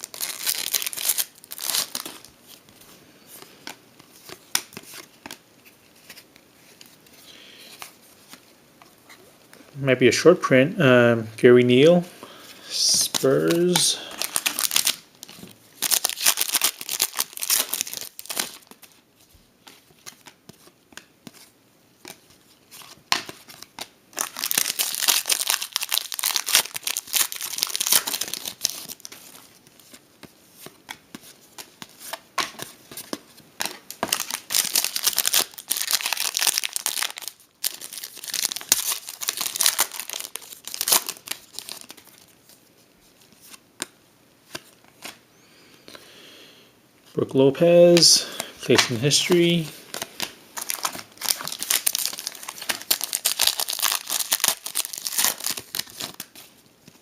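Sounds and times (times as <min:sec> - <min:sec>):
wrappers tearing and crinkling: 0:00.0 - 0:02.3, 0:12.8 - 0:18.9, 0:22.7 - 0:29.5, 0:33.6 - 0:42.4, 0:48.7 - 0:57.0.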